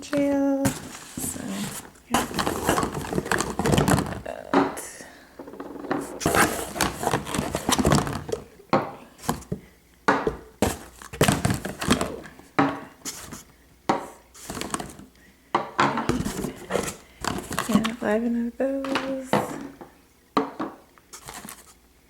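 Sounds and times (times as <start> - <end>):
plastic cups knocking and clattering: 0.0 - 21.8
rustling: 0.2 - 8.5, 21.1 - 21.8.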